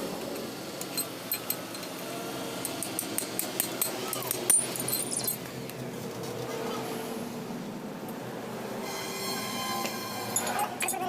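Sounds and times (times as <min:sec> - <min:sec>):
metallic clinks of tools: 0:00.3 - 0:05.5, 0:10.3 - 0:11.0.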